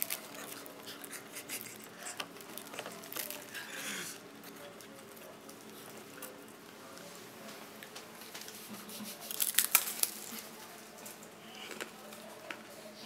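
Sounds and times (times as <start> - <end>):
plastic wrapper crinkling: 0.0 - 0.9, 2.2 - 3.6, 9.3 - 10.6
crackers crackling: 0.0 - 13.0.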